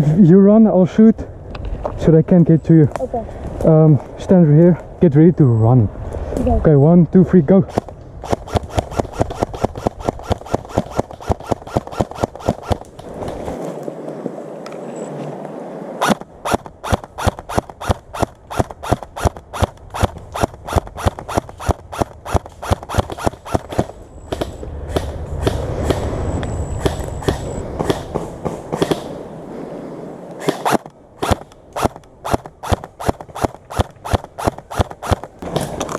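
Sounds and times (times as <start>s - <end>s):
airsoft gun rapid shots: 7.7s - 12.8s, 16.0s - 26.1s, 26.8s - 29.1s, 30.4s - 35.4s.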